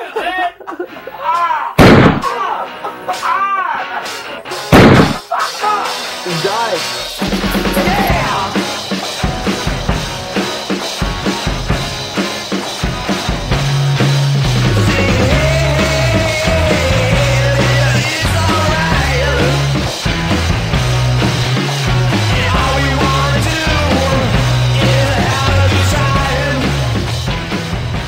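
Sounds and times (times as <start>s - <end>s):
rock music with drums: 0.9s - 28.0s
person crying out: 1.2s - 3.9s, 5.2s - 6.0s, 7.7s - 8.5s
pistol shot: 1.8s - 2.3s, 4.7s - 5.2s.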